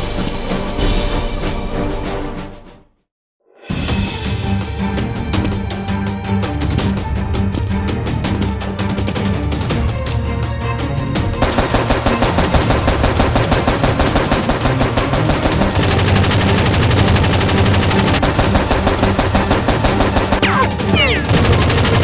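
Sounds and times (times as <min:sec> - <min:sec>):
rapid automatic gunfire: 0:11.4 - 0:22.0.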